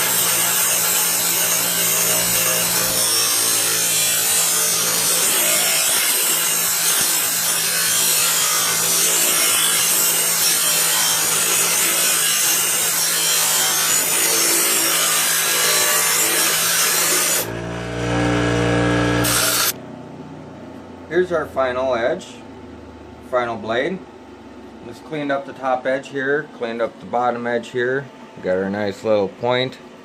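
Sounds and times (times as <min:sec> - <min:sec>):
grinder grinding steel: 0:00.0 - 0:19.8
grinder motor hum: 0:00.0 - 0:19.9.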